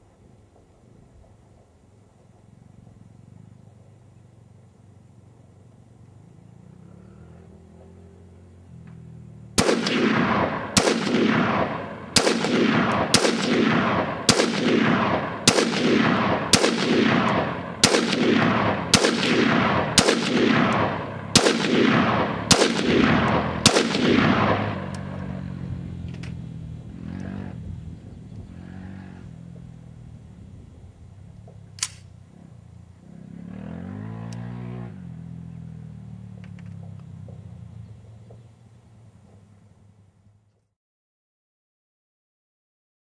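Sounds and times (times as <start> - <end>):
rifle shots with echo: 9.6 - 26.0.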